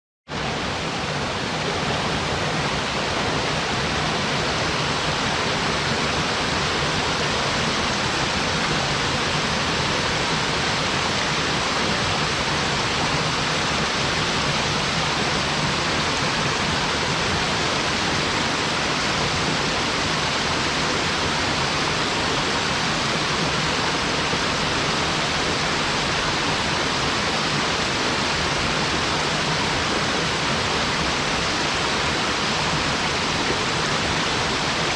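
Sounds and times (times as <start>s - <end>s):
waterfall splashing into pool: 0.3s - 34.9s.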